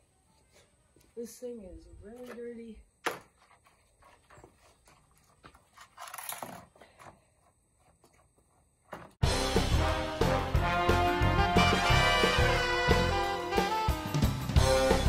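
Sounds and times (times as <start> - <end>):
handling scrapes and clicks: 3.3 - 9.0
loud background music: 9.2 - 15.0.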